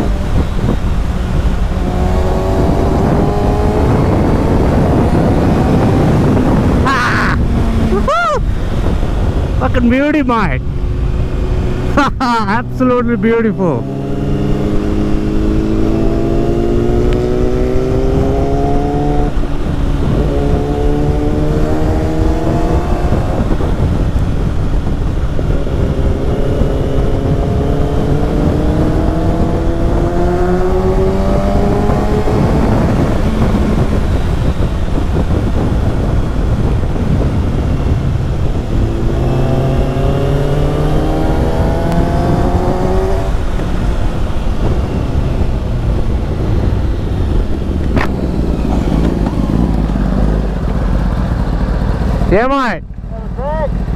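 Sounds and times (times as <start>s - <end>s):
motorcycle engine shifting gears: 0.0s - 9.8s, 10.6s - 53.9s.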